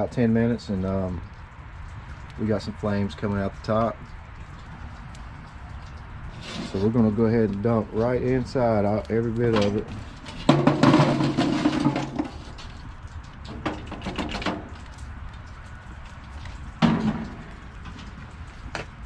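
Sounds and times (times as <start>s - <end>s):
charcoal scraping and rattling: 5.9s - 15.0s
metal clanks: 9.5s - 12.9s, 16.8s - 18.2s.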